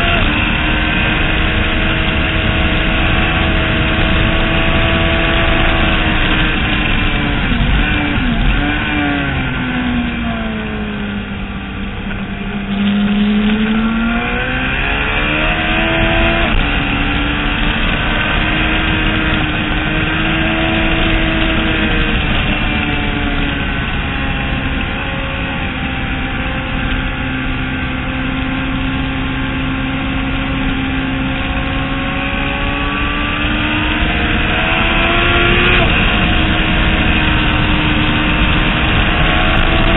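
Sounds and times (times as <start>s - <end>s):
motorcycle engine revving high: 0.0s - 39.9s.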